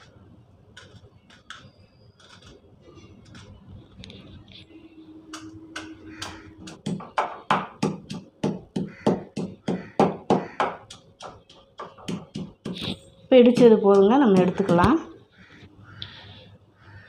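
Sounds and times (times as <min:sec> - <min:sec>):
pestle pounding in mortar: 0:05.8 - 0:15.1.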